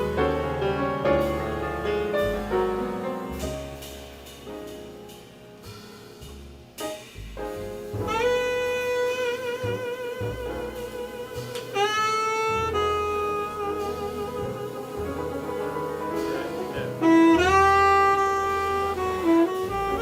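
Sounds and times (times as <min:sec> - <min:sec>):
piano chords: 0:00.0 - 0:20.0
upright bass notes: 0:00.0 - 0:20.0
saxophone held note: 0:08.0 - 0:20.0.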